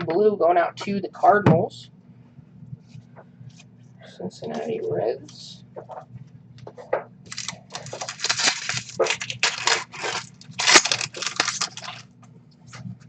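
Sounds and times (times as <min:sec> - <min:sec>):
card pack wrapper crinkling: 0:07.3 - 0:12.1.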